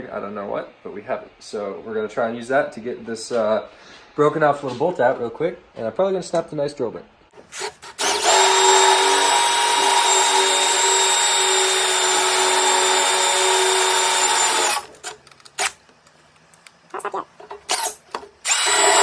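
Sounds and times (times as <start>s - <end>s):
power drill whining: 7.5s - 15.0s, 17.7s - 19.0s.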